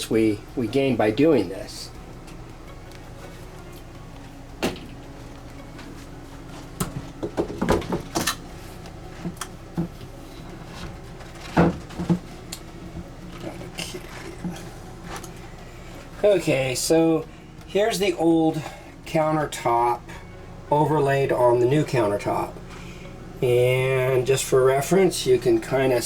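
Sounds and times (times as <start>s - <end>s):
countertop knocks and clunks: 6.9s - 8.3s.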